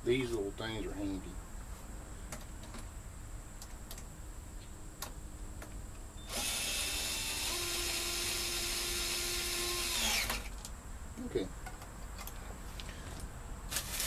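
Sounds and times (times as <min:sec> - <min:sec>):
power screwdriver whining: 0:06.3 - 0:10.5.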